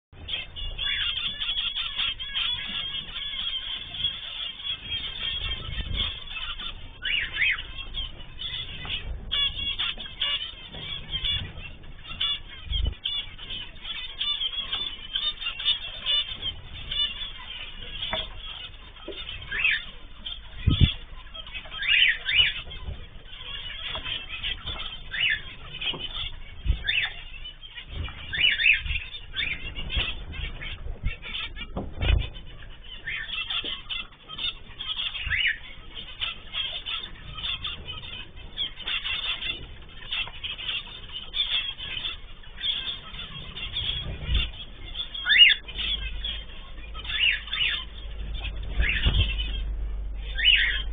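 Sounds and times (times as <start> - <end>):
birds chirping and calling: 0.2 - 50.9
low thumps: 20.2 - 33.9, 47.7 - 50.9.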